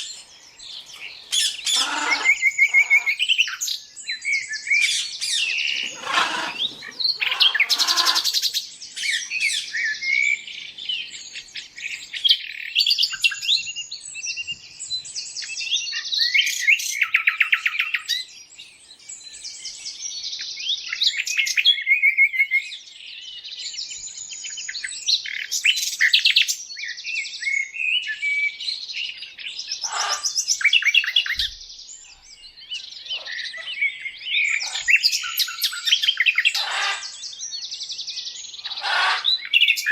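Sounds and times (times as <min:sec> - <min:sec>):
harsh lower bird calls: 0:00.0 - 0:14.7, 0:29.2 - 0:39.9
small birds chirping and trilling: 0:00.0 - 0:39.9.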